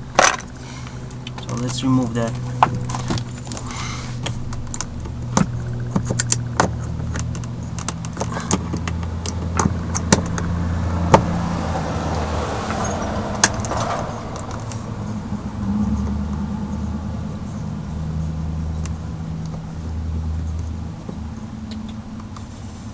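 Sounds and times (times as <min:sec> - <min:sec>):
steady low hum: 0:00.0 - 0:12.5, 0:13.2 - 0:22.9.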